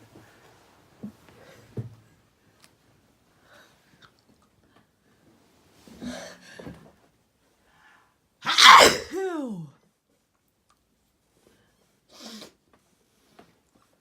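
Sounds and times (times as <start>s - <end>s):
person sneezing: 8.4s - 9.6s.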